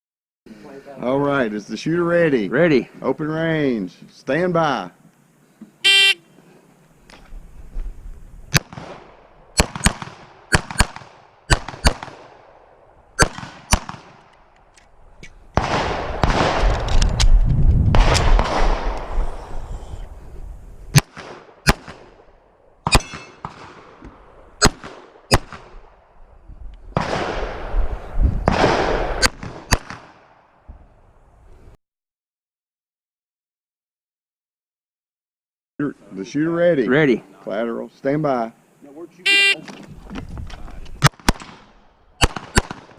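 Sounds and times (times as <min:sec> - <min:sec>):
pistol shots: 0:08.5 - 0:12.5, 0:13.2 - 0:14.2, 0:20.9 - 0:22.1, 0:22.8 - 0:24.0, 0:24.6 - 0:25.7, 0:28.5 - 0:30.3, 0:41.0 - 0:42.9.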